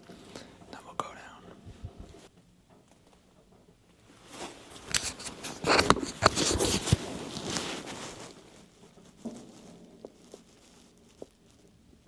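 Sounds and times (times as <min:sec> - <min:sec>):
close rustling and handling: 0:00.0 - 0:11.9
sharp clicks and scrapes: 0:04.7 - 0:08.4.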